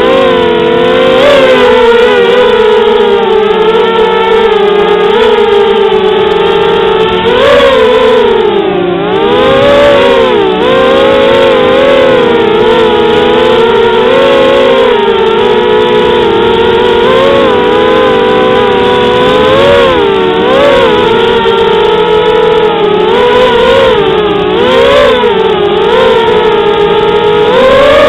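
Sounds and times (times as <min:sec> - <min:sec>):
quadcopter motors buzzing: 0:00.0 - 0:28.0.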